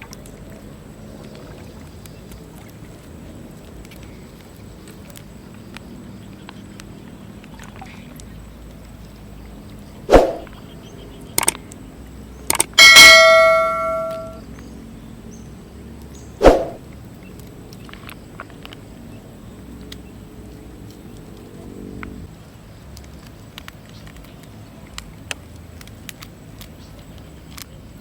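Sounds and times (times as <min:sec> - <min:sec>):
metal object ringing: 0:12.8 - 0:14.4.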